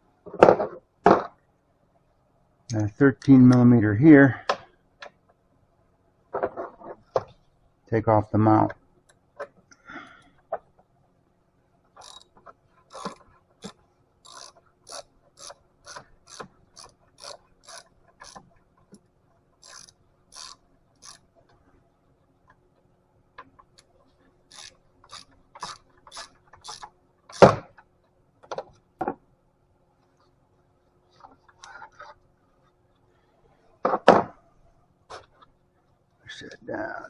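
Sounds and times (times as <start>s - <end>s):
socket ratchet clicking: 12.0s - 18.5s, 19.6s - 21.3s, 24.5s - 27.5s.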